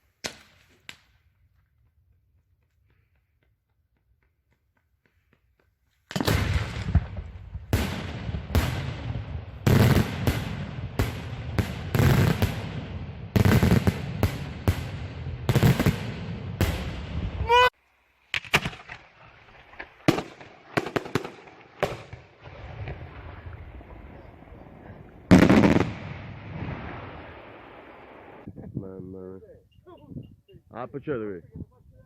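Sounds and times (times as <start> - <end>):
firework cracks and pops: 6.1 - 8.9, 18.3 - 24.1, 25.3 - 28.0
loud firework bangs: 6.1 - 17.6, 18.3 - 28.4.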